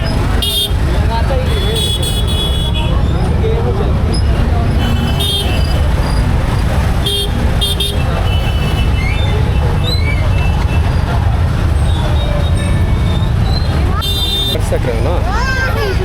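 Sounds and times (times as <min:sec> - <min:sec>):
low rumble of traffic: 0:00.0 - 0:16.0
vehicle horns honking: 0:00.1 - 0:03.1, 0:04.7 - 0:06.1, 0:07.0 - 0:09.2, 0:12.0 - 0:14.8.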